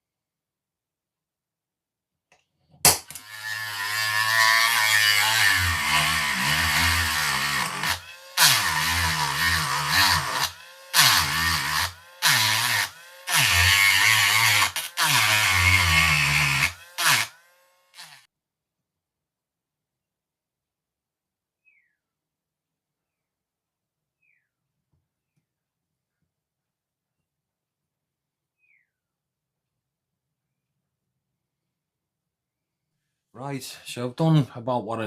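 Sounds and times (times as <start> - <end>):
power tool cutting metal: 3.0 - 18.3.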